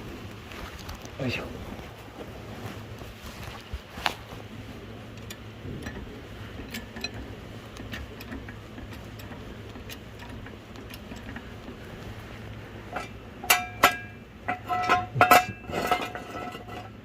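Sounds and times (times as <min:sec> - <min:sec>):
steady low hum: 0:00.0 - 0:17.0
metallic clicks of jacking gear: 0:05.1 - 0:17.0.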